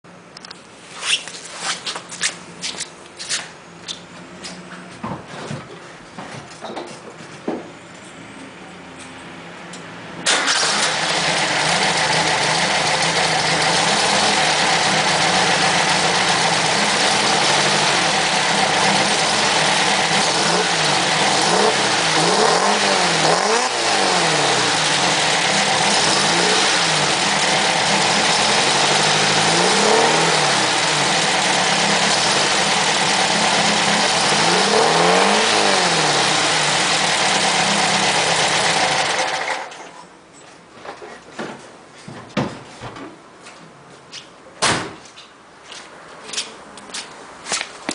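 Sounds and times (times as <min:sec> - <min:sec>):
car engine idling and revving: 0:09.7 - 0:39.8.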